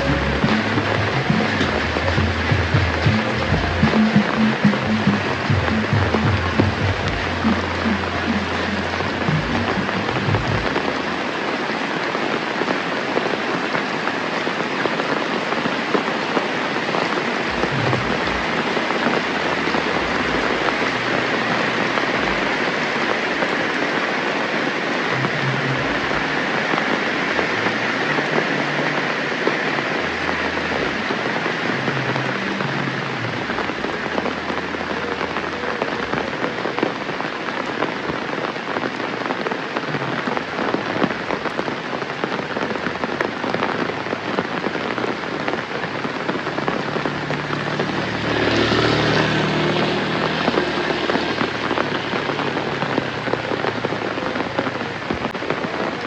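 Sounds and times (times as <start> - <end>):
loud pitched sound: 0.0 - 11.1
steady rain: 0.0 - 56.0.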